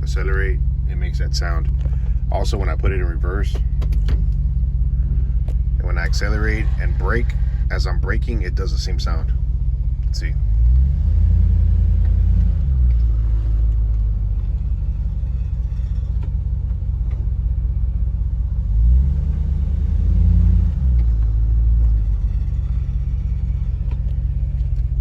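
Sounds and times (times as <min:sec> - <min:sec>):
pickup engine accelerating: 0:00.0 - 0:25.0
rattling under truck: 0:12.8 - 0:18.3.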